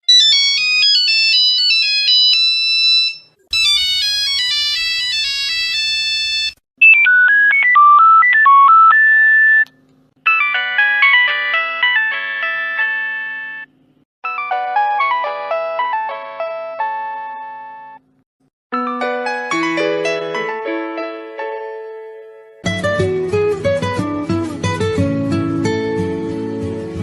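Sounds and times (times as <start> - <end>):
phone ringtone melodies: 0.1 - 9.6, 10.2 - 18.0, 18.8 - 21.4.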